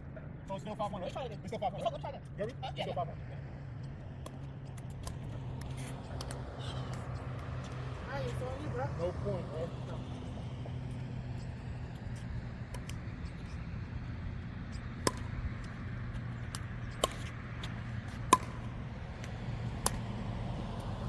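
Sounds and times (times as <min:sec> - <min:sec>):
steady low hum: 0:00.0 - 0:21.0
paddles striking plastic ball: 0:15.0 - 0:15.8, 0:16.5 - 0:21.0.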